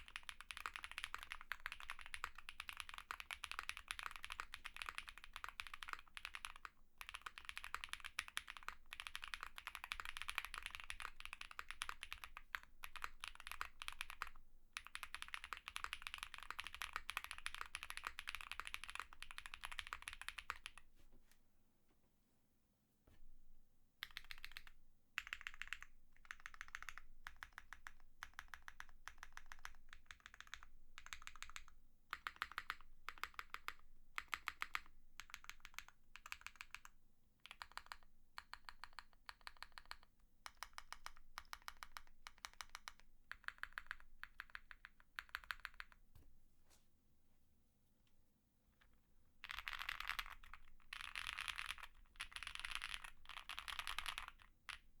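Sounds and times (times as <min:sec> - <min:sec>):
mechanical keyboard typing: 0:00.0 - 0:20.8, 0:24.0 - 0:36.9, 0:49.4 - 0:54.4.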